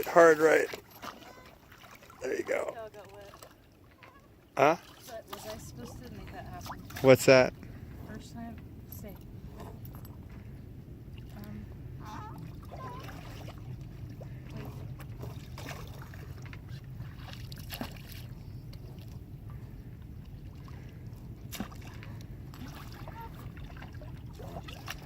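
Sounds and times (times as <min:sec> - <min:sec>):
low water rumble: 0:00.0 - 0:25.0
water sloshing: 0:00.0 - 0:25.0.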